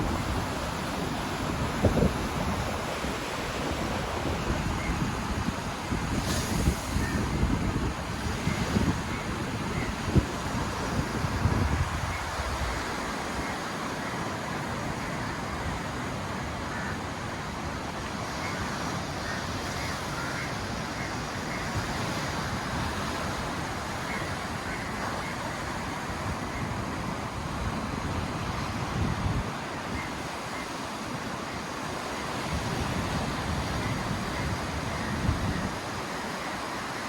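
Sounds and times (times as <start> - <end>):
wind buffeting microphone: 0.0 - 13.4, 19.6 - 30.4, 32.0 - 36.4
ocean surf rushing: 0.0 - 37.0.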